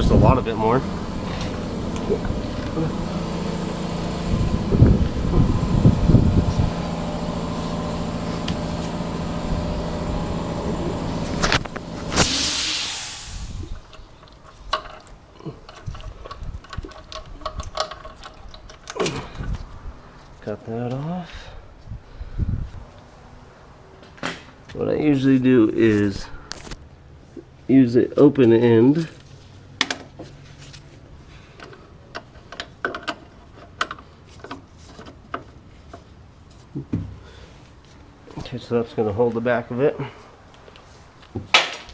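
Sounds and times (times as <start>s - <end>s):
loud hiss: 12.0s - 13.8s
wrench clinking on metal: 41.6s - 41.9s.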